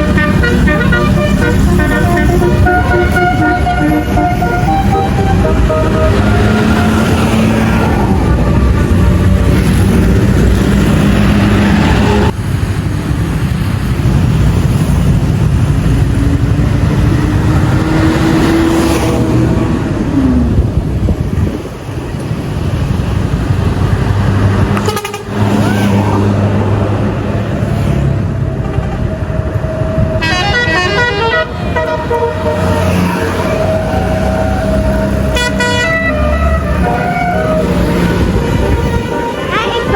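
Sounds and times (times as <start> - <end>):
musical bus horns: 0.0 - 12.3, 24.6 - 26.0, 28.3 - 39.9
bus engine rumble: 0.0 - 39.9.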